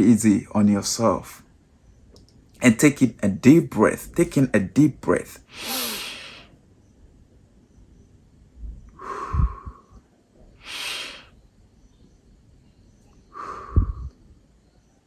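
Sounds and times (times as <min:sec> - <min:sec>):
man breathing deeply: 0:05.5 - 0:06.6, 0:08.9 - 0:11.4, 0:13.2 - 0:14.3.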